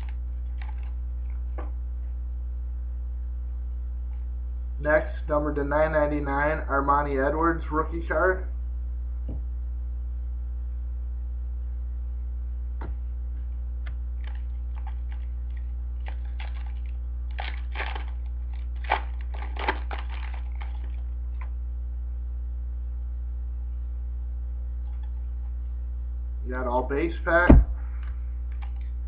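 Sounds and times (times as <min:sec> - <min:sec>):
foil pack crinkling: 0:00.0 - 0:01.4, 0:14.2 - 0:21.5
electrical hum: 0:00.0 - 0:29.0.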